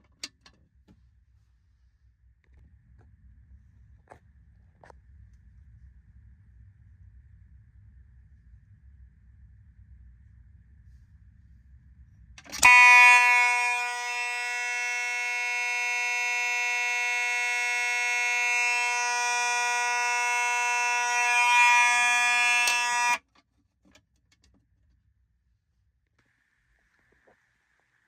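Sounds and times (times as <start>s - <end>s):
fire alarm horn buzzing: 12.5s - 23.2s.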